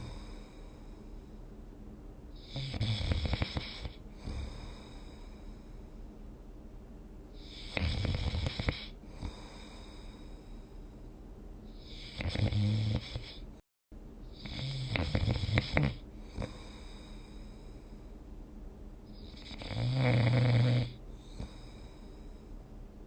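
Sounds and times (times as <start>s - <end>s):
person snoring: 0.0s - 1.2s, 2.4s - 5.7s, 7.4s - 10.6s, 11.8s - 13.4s, 14.4s - 18.0s, 19.1s - 22.4s.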